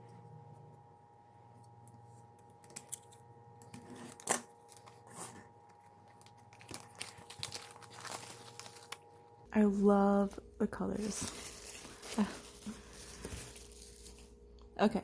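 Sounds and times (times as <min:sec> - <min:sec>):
faint hum: 0:00.0 - 0:15.0
plastic wrap crinkling: 0:05.7 - 0:14.4.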